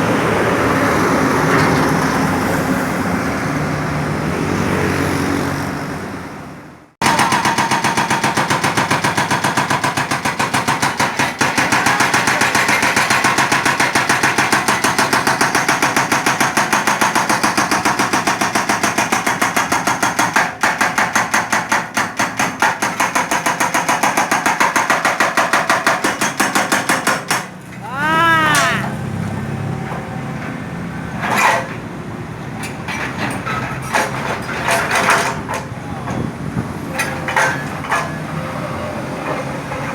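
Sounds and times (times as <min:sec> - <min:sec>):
hydraulic breaker hammering concrete: 0:07.0 - 0:27.6, 0:32.8 - 0:38.3.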